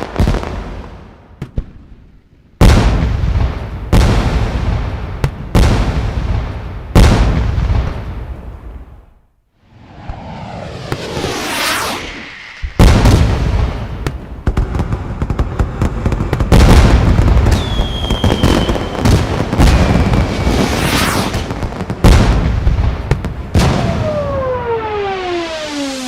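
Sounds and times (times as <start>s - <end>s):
firework bangs: 0.0s - 2.0s, 2.6s - 9.0s, 9.7s - 26.0s
booms of bursting shells: 2.6s - 8.6s, 9.8s - 26.0s
whistling firework shell: 9.8s - 14.4s, 17.4s - 22.3s, 23.2s - 26.0s
fireworks crackling: 9.8s - 26.0s.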